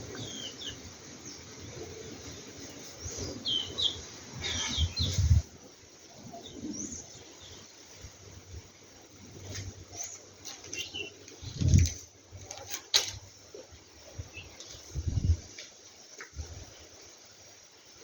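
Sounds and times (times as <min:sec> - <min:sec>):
birds chirping: 0:00.0 - 0:05.5, 0:09.4 - 0:12.6.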